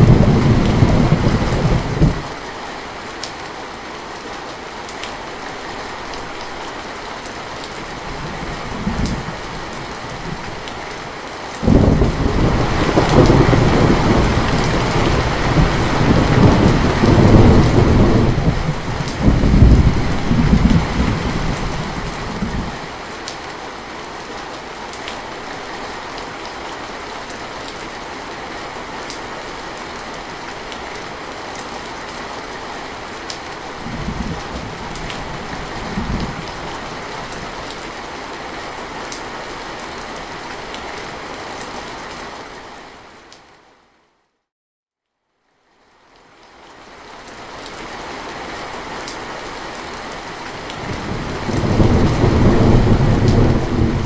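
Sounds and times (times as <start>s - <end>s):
thunder rolling: 0.0s - 2.3s, 11.6s - 22.8s, 50.8s - 54.0s
steady rain falling: 0.0s - 44.2s, 45.2s - 54.0s.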